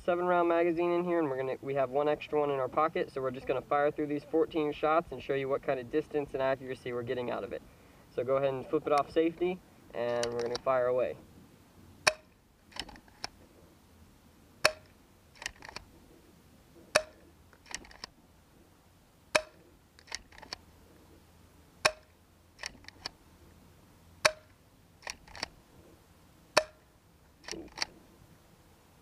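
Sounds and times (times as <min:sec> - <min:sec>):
soft clicks: 0:10.1 - 0:10.7
paintball pistol shots: 0:12.0 - 0:12.4, 0:14.6 - 0:15.0, 0:16.9 - 0:17.2, 0:19.3 - 0:19.6, 0:21.8 - 0:22.1, 0:24.2 - 0:24.6, 0:26.6 - 0:26.8.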